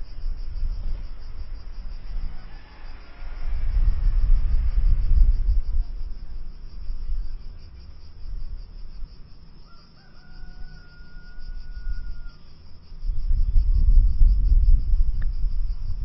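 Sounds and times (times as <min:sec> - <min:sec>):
low rumble: 0:00.0 - 0:09.1, 0:12.9 - 0:16.0
faint steady tone: 0:00.0 - 0:16.0
insects chirping: 0:00.0 - 0:16.0.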